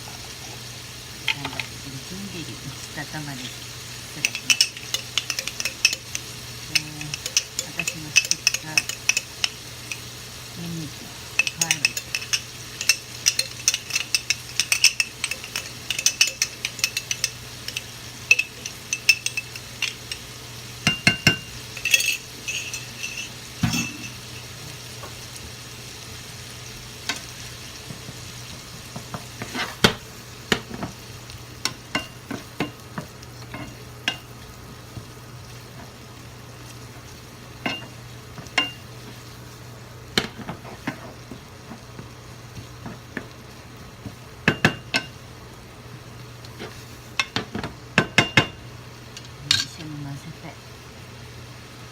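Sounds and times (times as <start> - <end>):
onion sizzling in a pan: 0.0 - 51.9
spatula clinking and scraping pan: 3.1 - 10.2, 11.2 - 25.2, 27.1 - 31.0, 31.6 - 34.4, 37.6 - 39.4, 40.2 - 43.3, 46.5 - 49.8.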